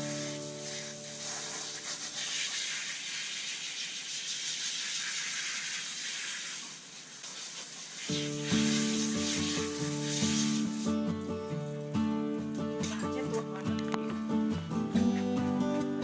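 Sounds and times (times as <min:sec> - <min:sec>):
water spraying: 0:00.0 - 0:11.3.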